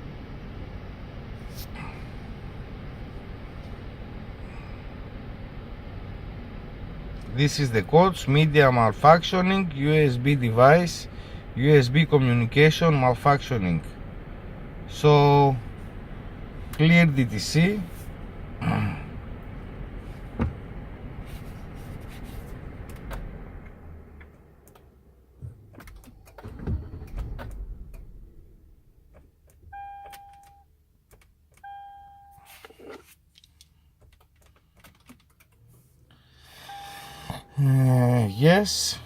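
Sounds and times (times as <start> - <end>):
electronic beeps: 36.6 - 37.7.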